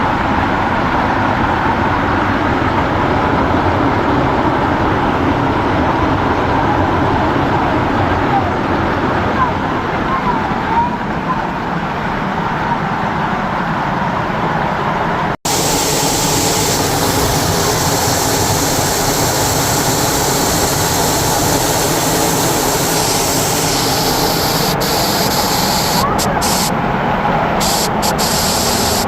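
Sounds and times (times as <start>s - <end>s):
waterfall rushing: 15.5s - 26.7s.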